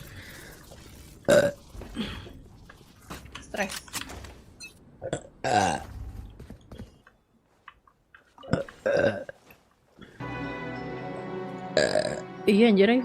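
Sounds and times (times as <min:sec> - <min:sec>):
woman burping loudly: 0:01.3 - 0:01.6, 0:05.0 - 0:05.8, 0:08.4 - 0:09.4, 0:11.8 - 0:12.2.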